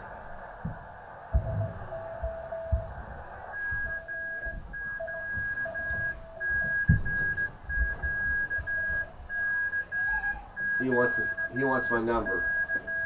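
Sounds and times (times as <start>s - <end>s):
faint low morse tone: 0.0s - 13.0s
dull low thumps: 0.2s - 10.0s
loud high morse tone: 1.4s - 13.0s.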